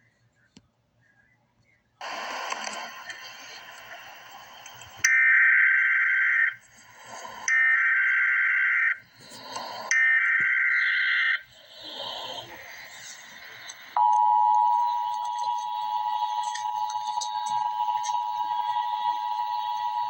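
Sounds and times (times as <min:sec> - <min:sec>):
buzzy digital data bursts: 0:09.7 - 0:14.1, 0:14.7 - 0:20.0.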